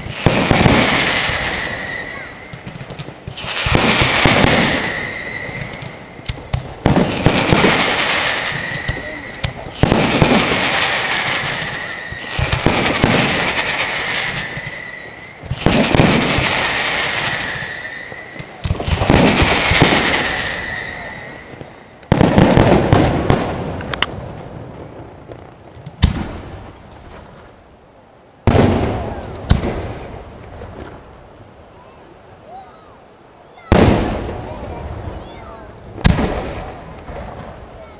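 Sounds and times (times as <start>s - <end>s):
sharp crack: 0.0s - 14.8s, 15.4s - 24.2s, 28.5s - 31.0s, 35.8s - 37.9s
firework crackle: 0.0s - 27.8s, 28.4s - 37.9s.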